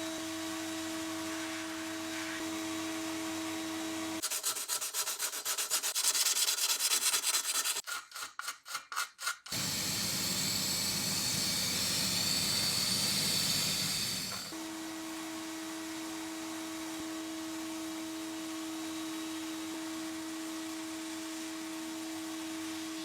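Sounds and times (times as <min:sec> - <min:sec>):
quick rhythmic rubbing strokes: 0:04.2 - 0:09.6.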